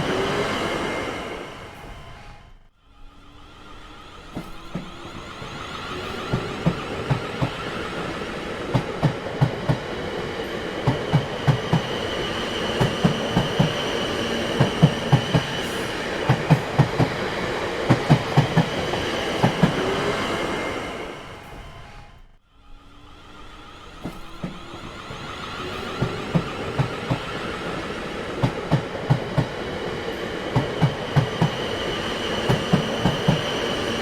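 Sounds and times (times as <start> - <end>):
steady train rumble: 0.0 - 34.0
wheels whining on rails: 0.0 - 34.0
train wheels clattering over rail joints: 4.3 - 20.0.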